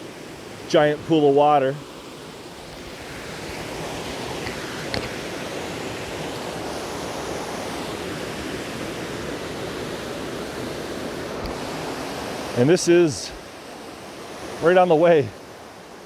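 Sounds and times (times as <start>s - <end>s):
creek water rushing: 0.0s - 16.0s
small click: 4.4s - 5.2s, 11.4s - 11.6s.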